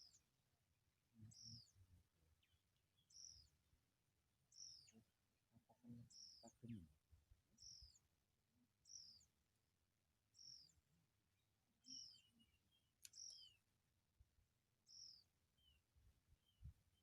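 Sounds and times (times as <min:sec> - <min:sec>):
soft low bird chirps: 0:00.0 - 0:00.3, 0:01.1 - 0:03.8, 0:04.5 - 0:08.1, 0:08.8 - 0:09.4, 0:10.3 - 0:13.7, 0:14.8 - 0:17.0
high falling bird calls: 0:13.1 - 0:13.6.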